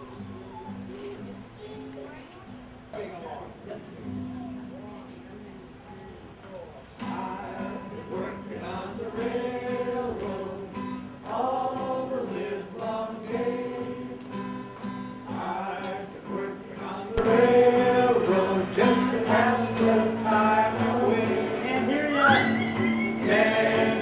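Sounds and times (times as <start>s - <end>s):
group singing with instruments: 7.1s - 14.7s, 15.3s - 24.0s.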